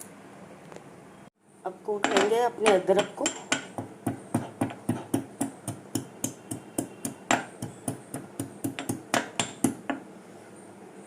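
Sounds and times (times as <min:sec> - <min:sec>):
pestle pounding in mortar: 0:03.0 - 0:10.0.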